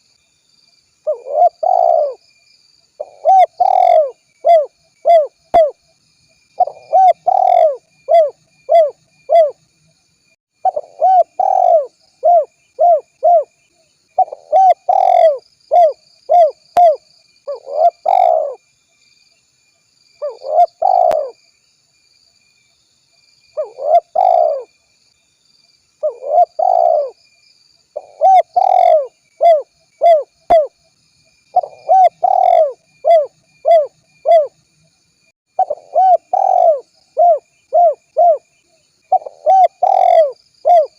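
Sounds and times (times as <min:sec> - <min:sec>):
dove cooing: 0:01.1 - 0:02.2, 0:03.0 - 0:05.8, 0:06.6 - 0:09.6, 0:10.6 - 0:13.6, 0:14.2 - 0:18.6, 0:20.2 - 0:21.4, 0:23.6 - 0:24.7, 0:26.0 - 0:27.2, 0:28.0 - 0:30.8, 0:31.6 - 0:34.6, 0:35.6 - 0:38.5, 0:39.1 - 0:40.9.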